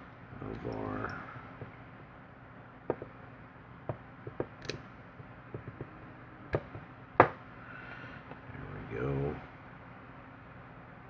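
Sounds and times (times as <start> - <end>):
padlock metal clicks: 4.6 - 4.9.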